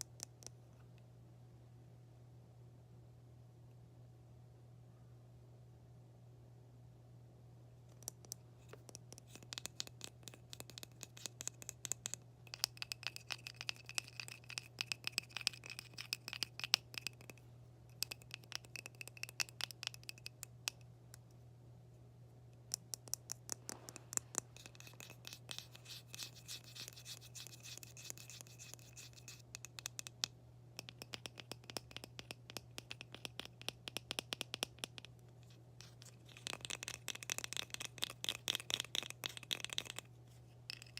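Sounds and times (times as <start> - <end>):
tapping and scratching on hard object: 7.9 - 21.2, 22.6 - 40.9.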